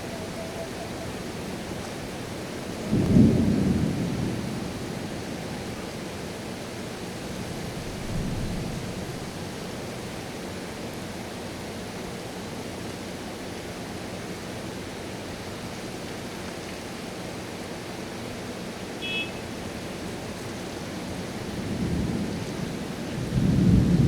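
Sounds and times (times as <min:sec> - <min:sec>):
steady rain falling: 0:00.0 - 0:24.0
short high beep: 0:19.0 - 0:19.4.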